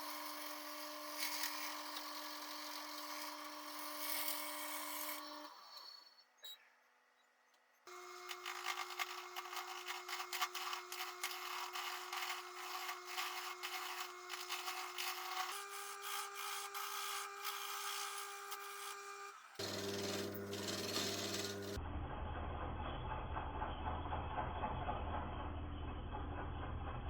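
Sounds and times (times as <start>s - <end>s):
turning tool scraping wood: 0.0s - 6.1s, 7.9s - 21.8s
wood lathe humming: 0.0s - 6.1s, 7.9s - 21.8s.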